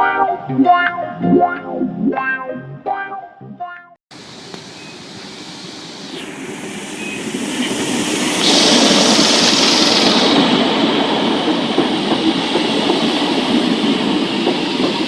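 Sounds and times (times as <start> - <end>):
plucked guitar music: 0.0 - 4.0
loud hiss: 4.1 - 15.0
train approaching on rails: 4.2 - 15.0.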